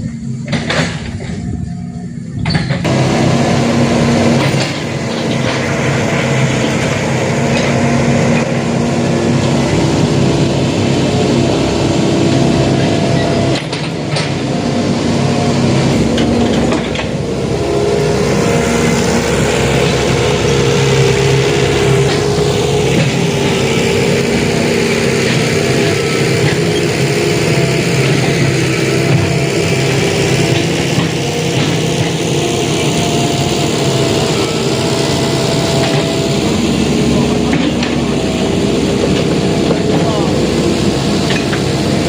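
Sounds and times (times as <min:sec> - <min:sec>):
excavator diesel engine running: 0:00.0 - 0:42.0.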